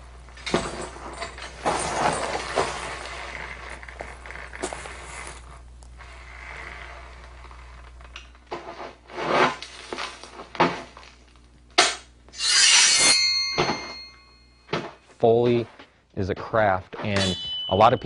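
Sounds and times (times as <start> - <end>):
rubbing and scraping strokes: 8.5 - 10.5, 12.4 - 13.4
loud harsh scrape: 8.6 - 10.2, 12.4 - 14.2
low hum: 11.0 - 16.3.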